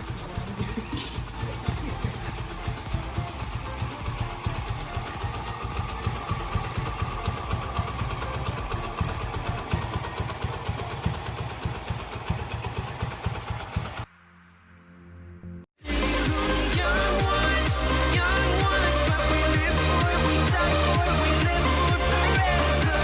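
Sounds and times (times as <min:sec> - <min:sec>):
motorcycle engine idling: 0:00.0 - 0:14.1, 0:15.9 - 0:23.0.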